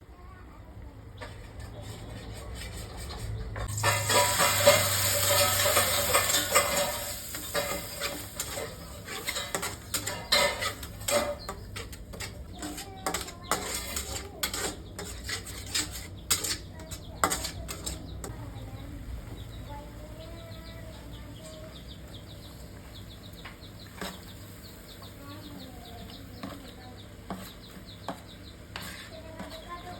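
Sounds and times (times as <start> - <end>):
spatula scraping and knocking pan: 1.1 - 18.4, 23.8 - 29.9
food sizzling in a pan: 3.7 - 11.0.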